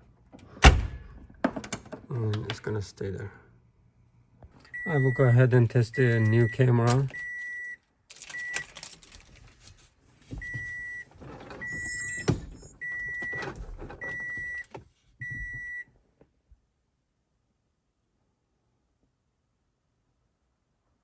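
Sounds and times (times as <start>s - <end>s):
reverse warning beeper: 4.8s - 7.8s, 11.6s - 13.4s.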